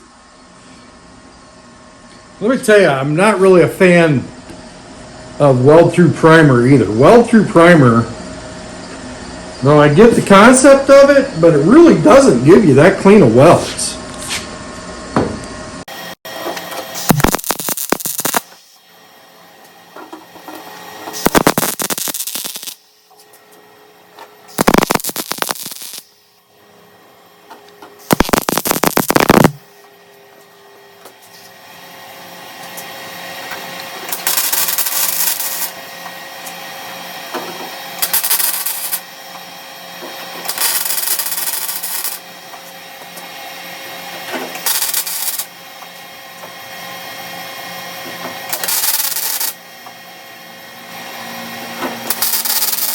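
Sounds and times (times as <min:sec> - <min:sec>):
steady background hum: 0:00.0 - 0:52.9
crackling welding bursts: 0:16.9 - 0:18.8, 0:21.1 - 0:22.9, 0:24.5 - 0:26.3, 0:28.0 - 0:29.7, 0:34.0 - 0:35.9, 0:37.8 - 0:39.2, 0:40.3 - 0:43.2, 0:44.5 - 0:45.6, 0:48.5 - 0:49.6, 0:52.0 - 0:52.9.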